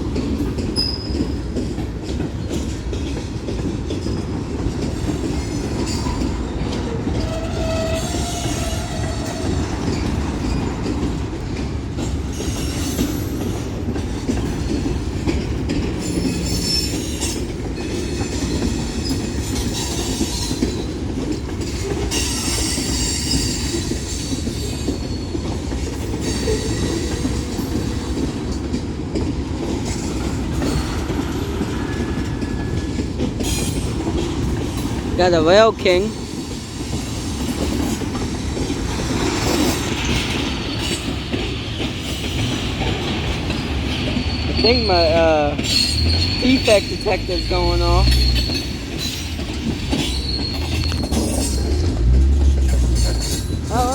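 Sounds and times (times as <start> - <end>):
clickety-clack over rail joints: 0.0 - 53.9
train wheels rumbling on rail: 0.0 - 53.9
high wheel squeal: 5.5 - 10.8, 22.1 - 25.4, 43.5 - 53.9.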